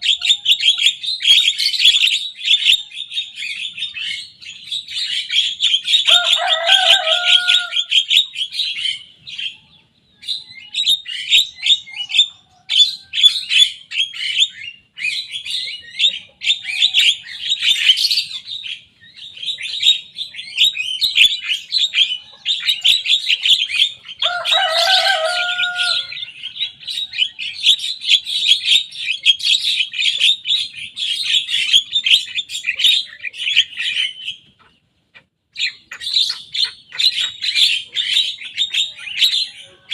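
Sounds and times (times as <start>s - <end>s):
bird chattering song: 0.0s - 39.9s
harsh low bird call: 16.5s - 34.4s.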